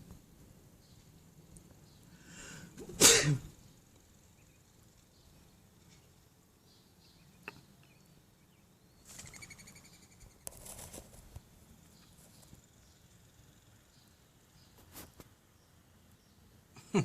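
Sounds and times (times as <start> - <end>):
faint background hiss: 0.0 - 17.0
high pulsed bird chirp: 3.5 - 10.5
rustling scuffle: 10.5 - 11.5.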